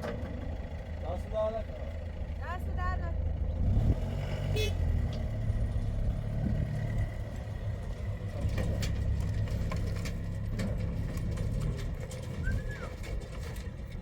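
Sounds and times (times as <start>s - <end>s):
motor vehicle rumbling: 0.0s - 14.0s
brief squeak: 12.4s - 13.1s.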